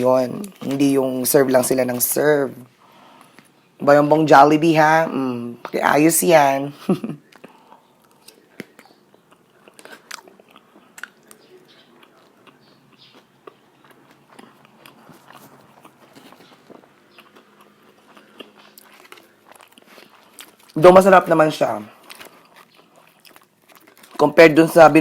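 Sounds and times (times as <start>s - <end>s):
person chewing crispy chicken: 7.2s - 20.8s, 21.9s - 24.2s
faint crunches of crispy coating: 7.3s - 20.8s, 21.9s - 24.3s.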